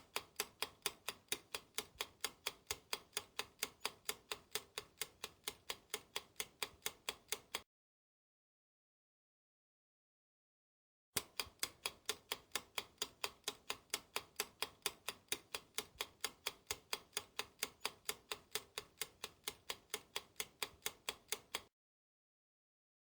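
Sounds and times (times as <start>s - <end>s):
clock ticking: 0.0s - 7.6s, 11.2s - 21.7s.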